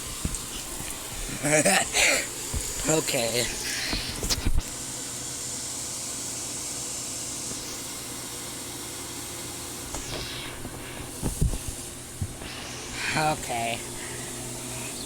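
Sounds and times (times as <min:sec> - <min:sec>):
rushing water hiss: 0:00.0 - 0:08.2
pool pump motor hum: 0:00.0 - 0:15.0.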